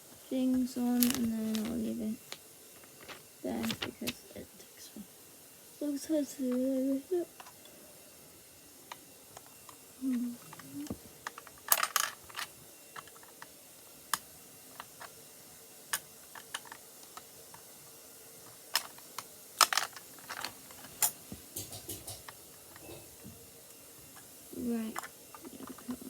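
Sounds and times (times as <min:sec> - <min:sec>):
plastic bricks clicking and clattering: 0:00.9 - 0:04.2, 0:10.1 - 0:13.5, 0:15.9 - 0:17.3, 0:18.5 - 0:22.4.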